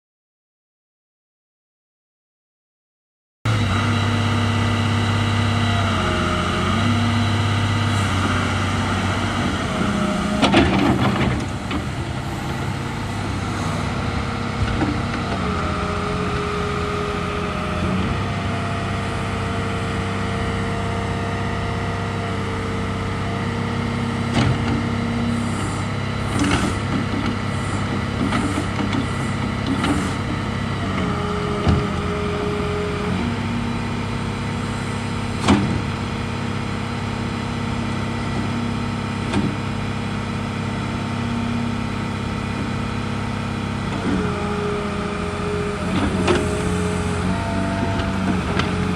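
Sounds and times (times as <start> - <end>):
excavator engine running: 3.5 - 48.9
whining tones shifting pitch: 8.5 - 24.3, 29.1 - 36.4, 44.0 - 48.9.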